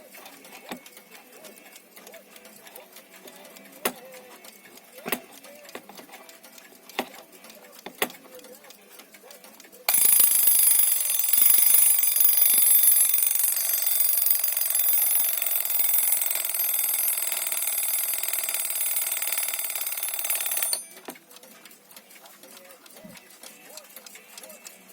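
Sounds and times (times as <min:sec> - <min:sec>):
mechanical alarm clock ringing: 0:09.9 - 0:21.2.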